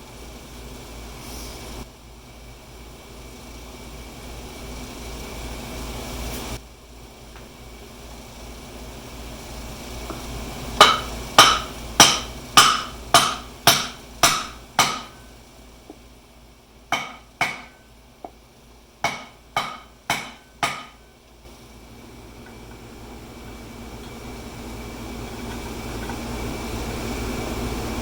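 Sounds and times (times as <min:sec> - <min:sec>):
hammer striking metal: 0:10.8 - 0:15.3, 0:16.9 - 0:17.9, 0:19.0 - 0:21.1.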